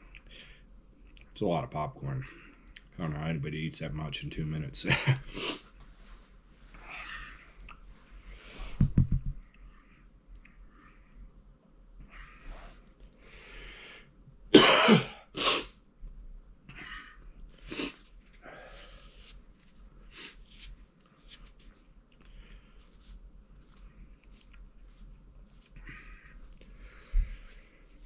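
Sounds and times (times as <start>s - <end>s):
man coughing: 14.6s - 15.3s.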